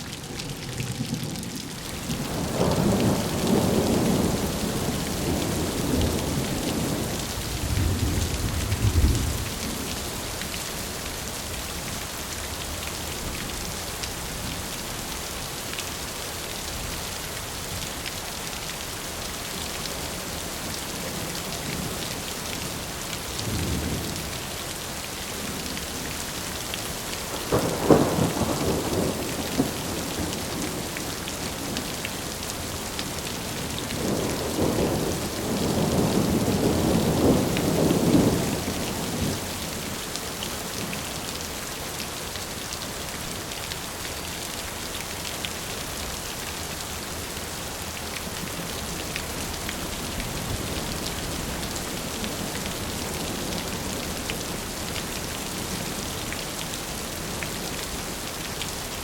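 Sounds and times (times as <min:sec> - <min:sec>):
steady rain falling: 0:00.0 - 0:59.0
thunder rolling: 0:00.3 - 0:06.4.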